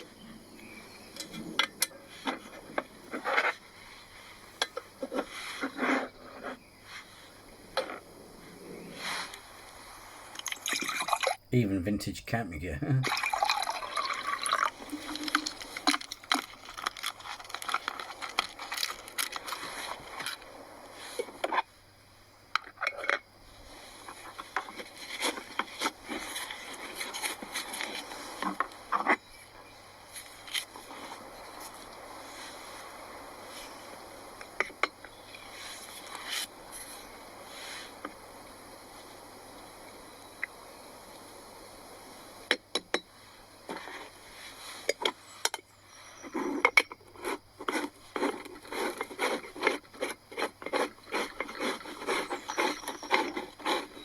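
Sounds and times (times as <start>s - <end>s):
scraping and rustling: 1.3s - 8.1s, 14.3s - 21.7s, 46.0s - 54.0s.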